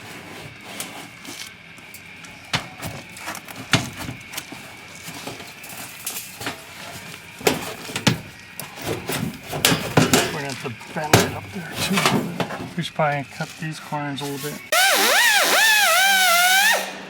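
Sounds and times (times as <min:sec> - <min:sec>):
sheet metal knocks and clanks: 0:08.9 - 0:10.4.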